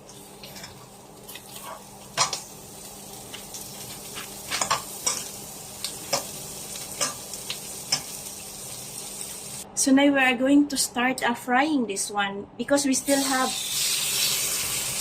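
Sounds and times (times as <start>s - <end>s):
onions sizzling in a frying pan: 0.0s - 9.6s, 13.1s - 15.0s.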